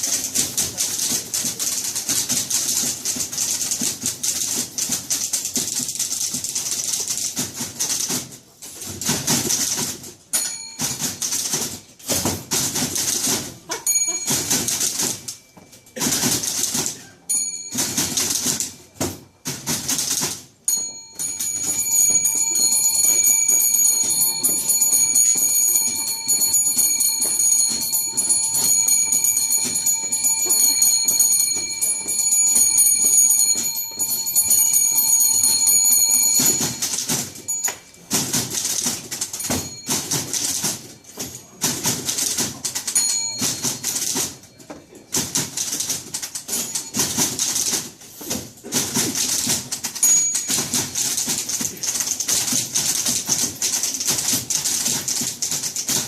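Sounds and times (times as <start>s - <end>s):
loud rhythmic typewriter strikes: 0.0s - 56.0s
typewriter key clatter: 0.0s - 56.0s
ringing bells: 10.3s - 12.0s, 13.2s - 19.4s, 20.6s - 41.6s, 42.2s - 45.1s, 46.4s - 47.7s, 49.9s - 55.2s.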